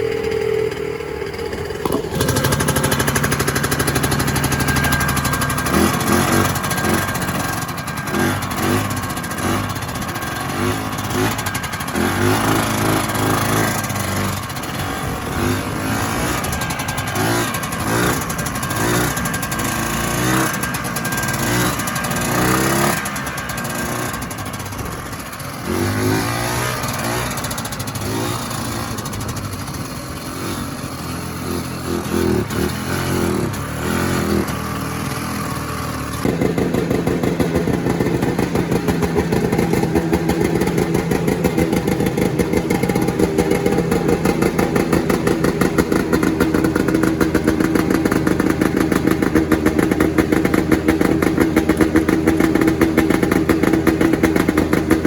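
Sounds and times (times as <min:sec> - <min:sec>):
snowmobile engine running: 0:00.0 - 0:55.0.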